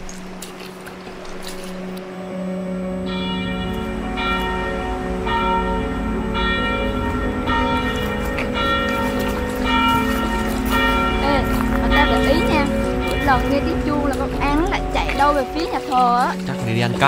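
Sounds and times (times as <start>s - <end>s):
church bell tolling: 1.8s - 16.6s.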